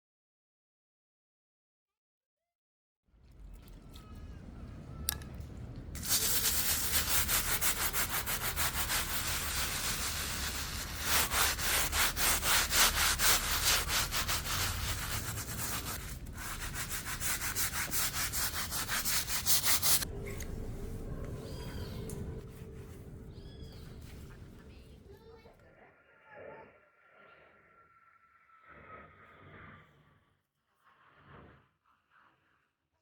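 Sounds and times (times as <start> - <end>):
rapid rhythmic scraping: 6.0 - 20.1.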